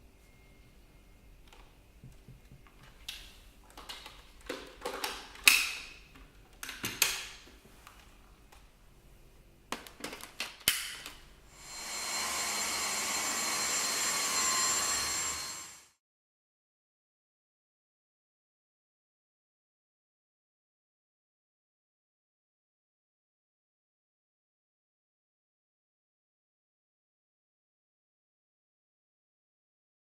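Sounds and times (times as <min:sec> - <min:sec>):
vacuum motor whining: 0:11.6 - 0:15.9.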